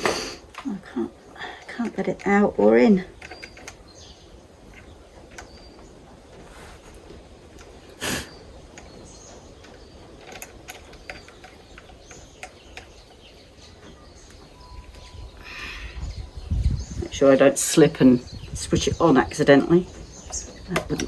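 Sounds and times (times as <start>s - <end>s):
faint bird chirps: 7.9s - 21.0s.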